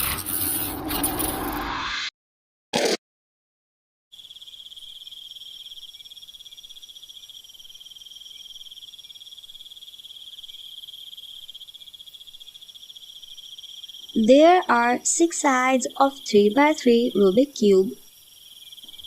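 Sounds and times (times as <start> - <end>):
high insect trill: 4.1 - 19.0.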